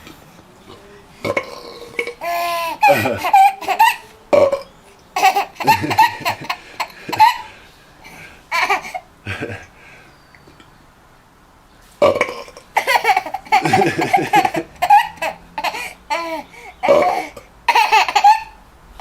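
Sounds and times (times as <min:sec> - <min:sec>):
man burping: 0:00.7 - 0:03.3, 0:04.3 - 0:04.7, 0:12.0 - 0:12.9, 0:16.8 - 0:17.5
baby giggling: 0:01.8 - 0:04.2, 0:05.2 - 0:07.5, 0:08.1 - 0:09.7, 0:12.5 - 0:18.6.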